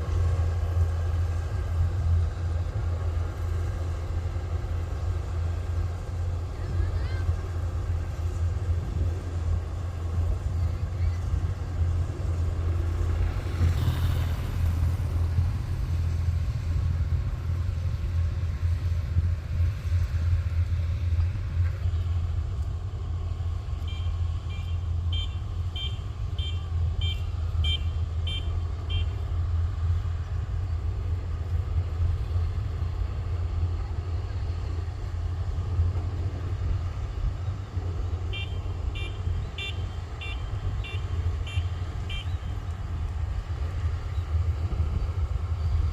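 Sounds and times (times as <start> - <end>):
diesel engine running: 0.0 - 45.9.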